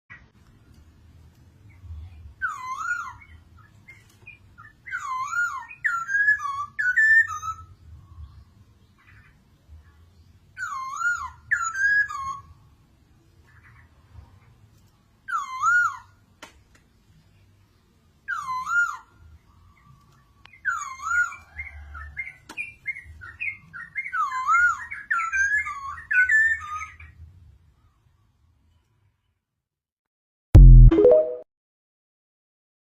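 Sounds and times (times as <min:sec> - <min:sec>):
bird singing whistled phrases: 0:04.9 - 0:07.7, 0:10.6 - 0:12.5, 0:20.5 - 0:27.1.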